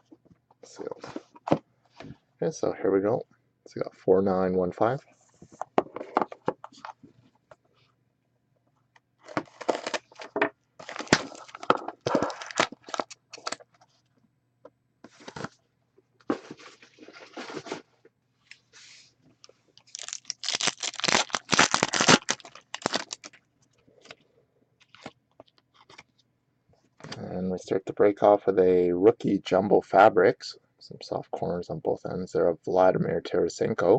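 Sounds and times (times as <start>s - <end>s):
plastic shrink wrap tearing: 10.8s - 13.6s, 19.8s - 23.4s.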